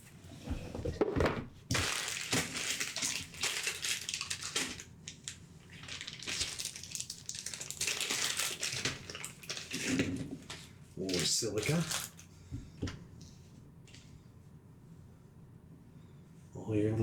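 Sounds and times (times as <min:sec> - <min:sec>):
packaging rustling and crinkling: 0:01.7 - 0:12.3.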